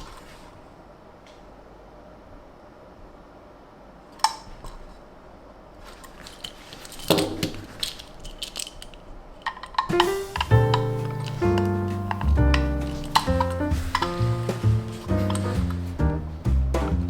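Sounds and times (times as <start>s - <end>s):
toy car and packaging clatter: 5.8s - 14.2s.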